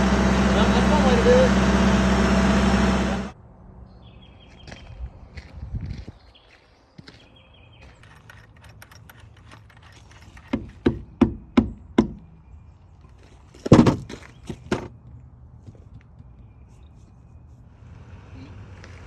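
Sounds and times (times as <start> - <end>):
hard knocks: 10.5 - 12.2, 13.7 - 14.1.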